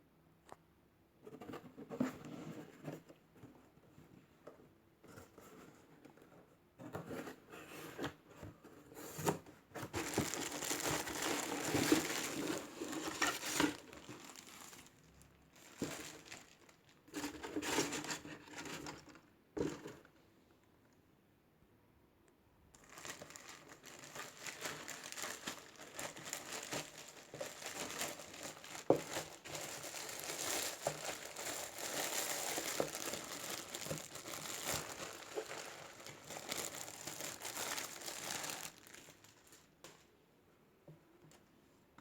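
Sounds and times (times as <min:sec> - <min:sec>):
packaging crinkling and rustling: 0:09.1 - 0:20.0, 0:22.8 - 0:40.0.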